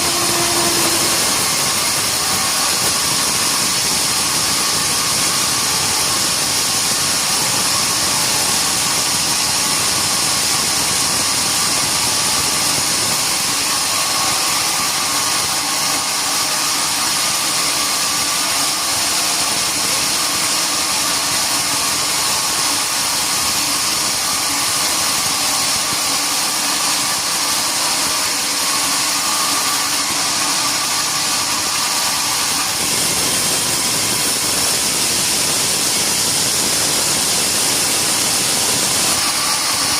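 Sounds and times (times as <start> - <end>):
sawmill machinery hissing: 0.0 - 39.9.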